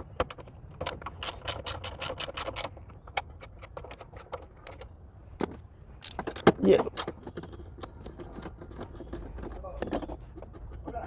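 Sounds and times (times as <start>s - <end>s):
ratchet wrench clicking: 0.8s - 2.7s, 6.0s - 6.5s.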